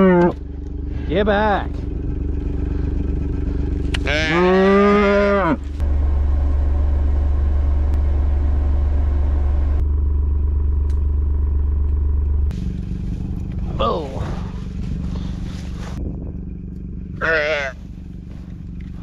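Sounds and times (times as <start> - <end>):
cow mooing: 0.0 - 0.4, 4.0 - 5.7, 17.2 - 17.8
vehicle engine droning: 0.0 - 19.0.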